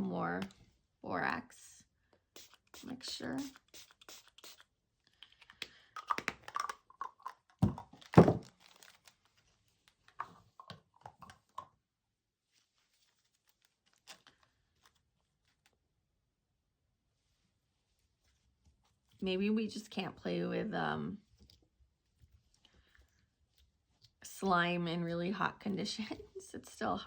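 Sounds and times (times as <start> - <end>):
spray hiss: 2.4 - 4.6.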